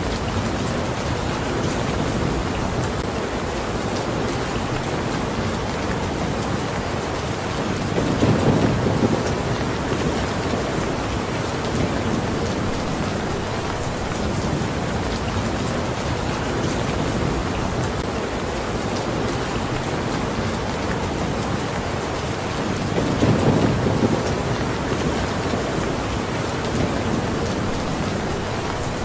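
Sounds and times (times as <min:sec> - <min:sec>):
heavy rain falling: 0:00.0 - 0:29.0
low rumble of thunder: 0:07.9 - 0:18.0, 0:22.8 - 0:29.0.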